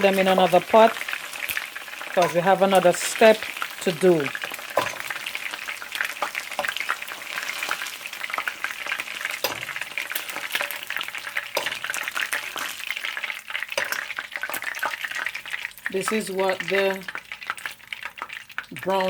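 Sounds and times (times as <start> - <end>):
chicken sizzling in hot oil: 0.0 - 19.0
utensil knocking on pot: 2.2 - 2.6, 4.8 - 5.2.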